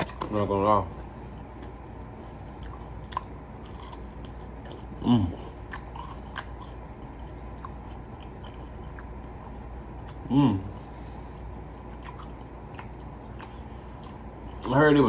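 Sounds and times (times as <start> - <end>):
person chewing food: 1.1 - 15.0
voiced hum with falling pitch: 4.2 - 15.0.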